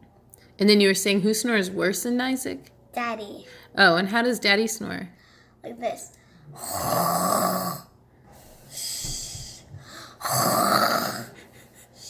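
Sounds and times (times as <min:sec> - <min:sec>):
person imitating heavy snoring: 0:06.6 - 0:07.9, 0:10.2 - 0:11.4.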